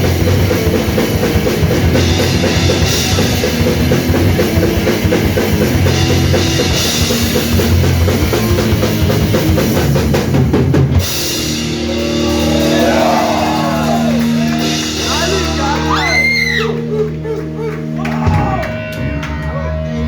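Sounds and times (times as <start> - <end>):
punk band playing: 0.0 - 20.0
sustained amplified guitar notes ringing: 11.0 - 20.0.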